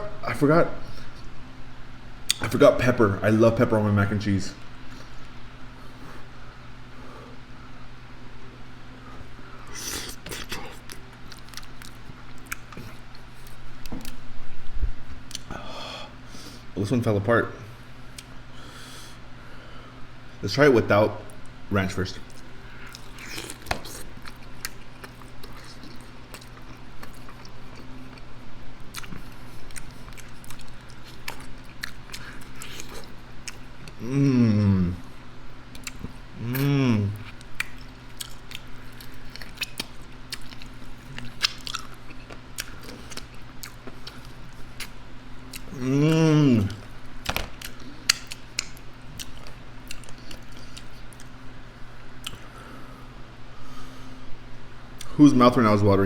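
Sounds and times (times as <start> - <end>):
steady low hum: 0.0 - 56.0
chewing and mouth clicks: 9.8 - 14.2, 22.2 - 34.0, 35.7 - 51.4.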